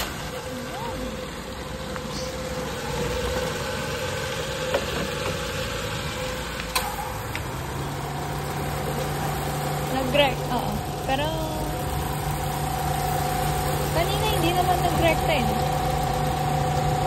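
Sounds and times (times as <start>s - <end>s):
car engine idling: 0.0s - 17.0s
steady low hum: 7.6s - 17.0s.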